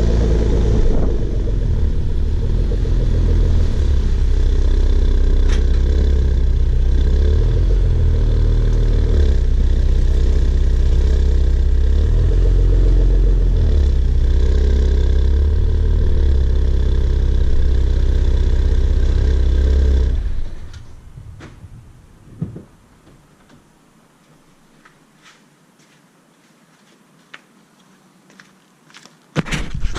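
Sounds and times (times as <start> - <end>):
car engine droning: 0.0 - 22.2.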